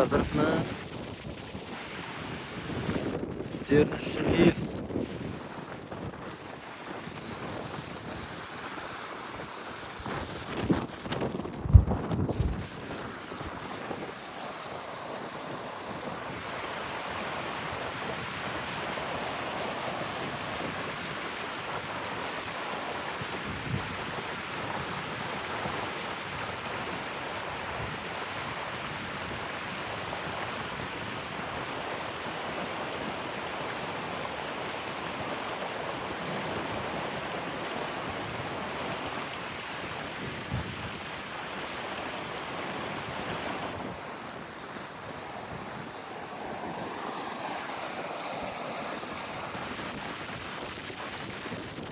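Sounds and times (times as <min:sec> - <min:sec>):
rainwater flowing: 0:00.0 - 0:28.2, 0:31.3 - 0:51.9
wind thumps on microphone: 0:00.1 - 0:14.2.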